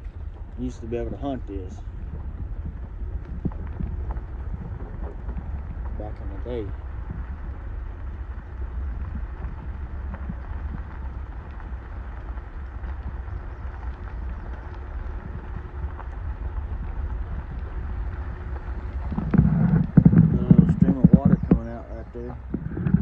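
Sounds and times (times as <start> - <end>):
vehicle rumble: 0.0 - 23.0.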